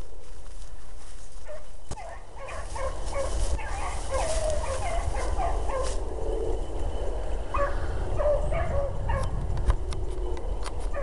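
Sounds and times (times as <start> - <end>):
hounds baying: 1.4 - 6.5, 7.4 - 9.4.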